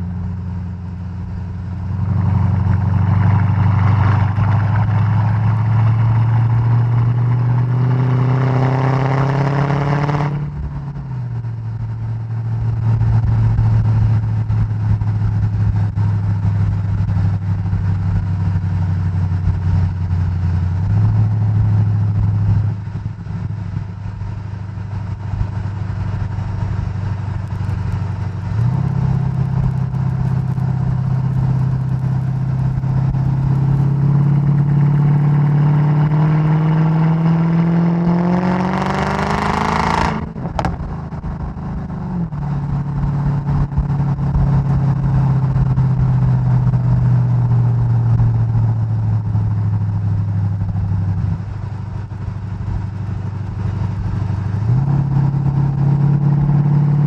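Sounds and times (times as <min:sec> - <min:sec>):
car engine accelerating: 0:00.0 - 0:57.0
exhaust pops: 0:27.1 - 0:36.1, 0:40.0 - 0:42.6.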